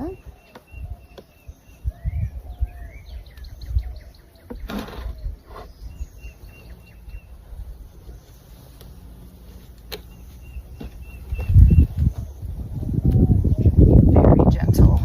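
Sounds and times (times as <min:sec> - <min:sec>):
low rumbling: 0:00.0 - 0:15.0
small birds chirping: 0:00.0 - 0:15.0
brief scrape: 0:04.6 - 0:05.7.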